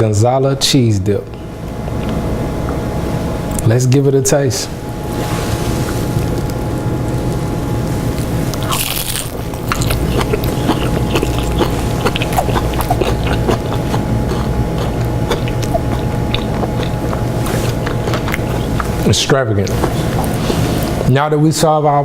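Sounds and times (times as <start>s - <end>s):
low hum: 0.0s - 21.2s
person chewing crispy food: 5.1s - 21.1s.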